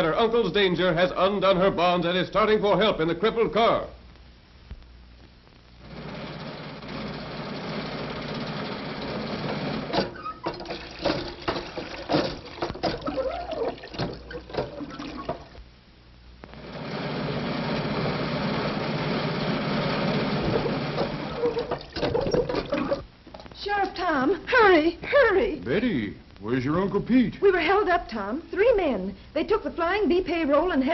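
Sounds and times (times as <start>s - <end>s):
clattering rattles and knocks: 9.9s - 15.5s, 20.3s - 23.5s.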